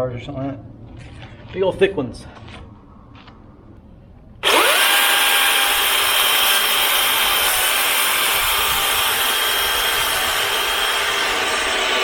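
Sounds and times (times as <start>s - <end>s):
chain cutting through wood: 4.4s - 12.0s
chainsaw motor whine: 4.4s - 12.0s.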